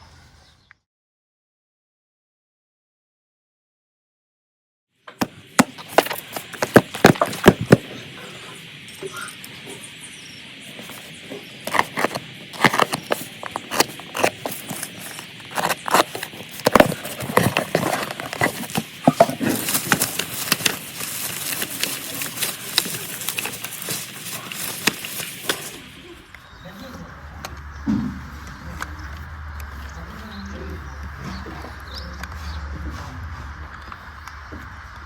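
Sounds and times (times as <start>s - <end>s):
packaging clicks and crackles: 5.2s - 7.9s, 10.6s - 26.0s
plastic wrapping crinkling: 5.2s - 8.0s, 10.6s - 26.1s.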